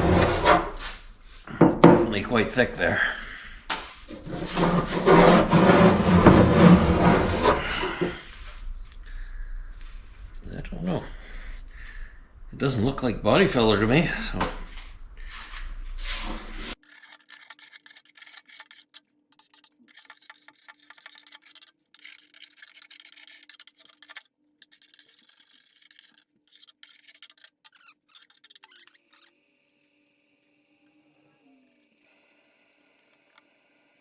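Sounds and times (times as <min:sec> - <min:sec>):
scraping strokes on metal: 0:16.0 - 0:29.3.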